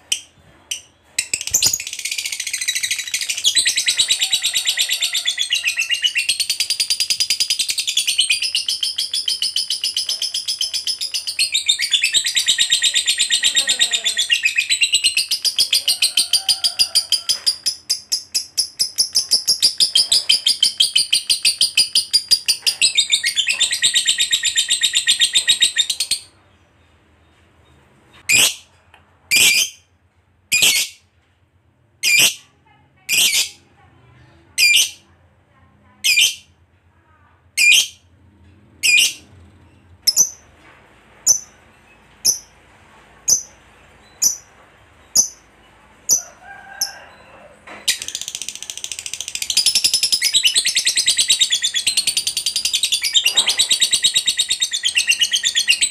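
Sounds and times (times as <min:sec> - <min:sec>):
lovebird trilling chatter: 0:42.2 - 0:42.5.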